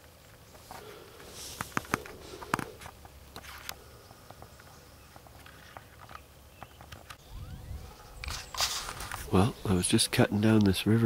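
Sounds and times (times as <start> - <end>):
rustling: 0.0 - 7.2, 7.8 - 9.6
footsteps pushing through brush: 0.4 - 7.1, 8.0 - 9.8.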